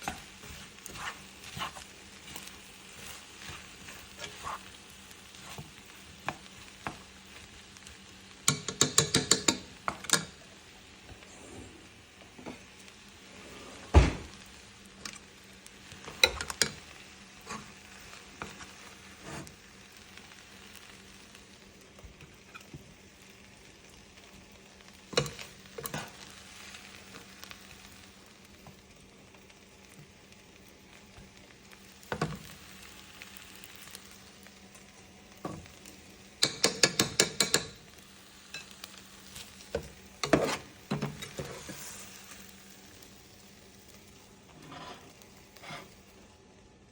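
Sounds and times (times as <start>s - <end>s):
rice sizzling in a pan: 0.0s - 46.9s
utensil scraping and knocking pan: 39.8s - 41.9s, 44.5s - 45.9s.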